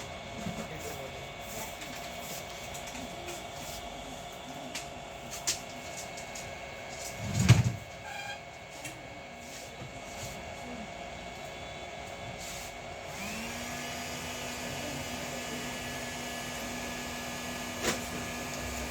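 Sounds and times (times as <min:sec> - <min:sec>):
hot-air station blowing: 0:09.4 - 0:18.9.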